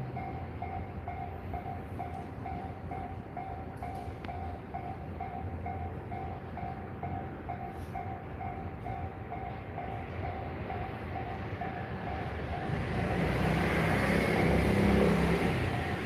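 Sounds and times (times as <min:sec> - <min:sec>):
level crossing warning bell: 0:00.0 - 0:16.0
train rumble: 0:00.0 - 0:16.0.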